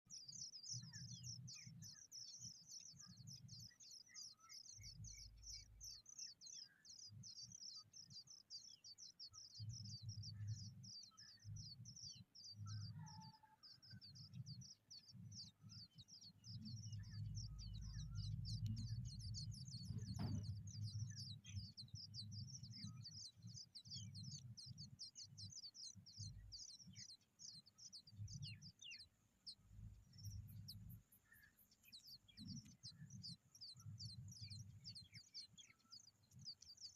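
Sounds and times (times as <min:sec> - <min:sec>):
small birds chirping: 0:00.0 - 0:36.9
low rumble: 0:16.8 - 0:21.0.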